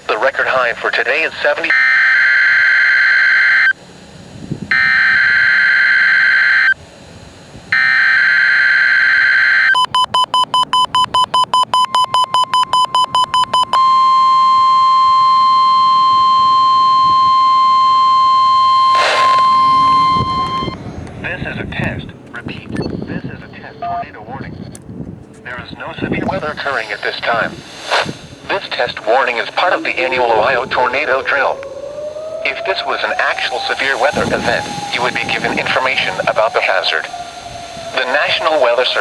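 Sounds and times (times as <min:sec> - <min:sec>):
steady alarm tone: 0:00.3 - 0:39.0
rapid beeping: 0:07.7 - 0:39.0
screechy digital header bursts: 0:07.8 - 0:24.7, 0:25.5 - 0:39.0.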